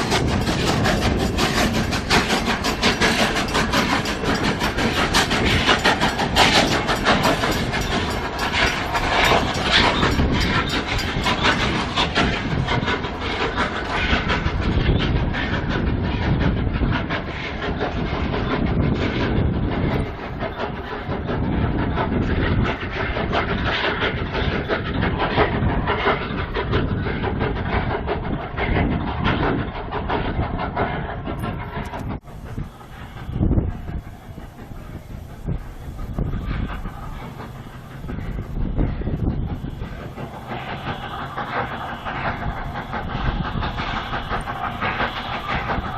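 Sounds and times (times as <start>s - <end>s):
wheel clicks and rattling: 0.0s - 14.9s
train rolling on rails: 0.0s - 45.9s.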